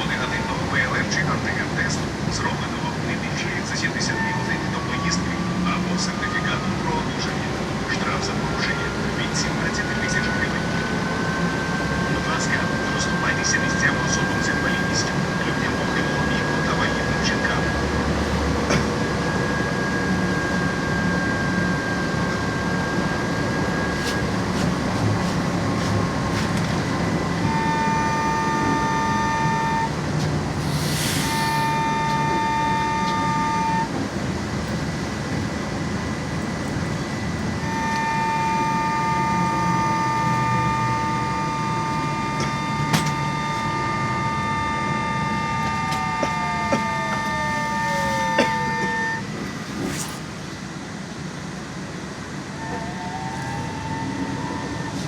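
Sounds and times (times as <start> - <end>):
trolleybus rumble: 0.0 - 55.0
short air hiss: 30.6 - 31.7
electric drive whine: 31.6 - 33.9, 37.6 - 49.4.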